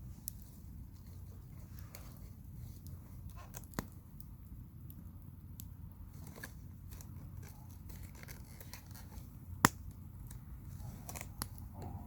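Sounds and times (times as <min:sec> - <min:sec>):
low steady rumble: 0:00.0 - 0:12.0
wood fire crackling: 0:00.0 - 0:12.0
sharp fire pops: 0:09.3 - 0:10.4.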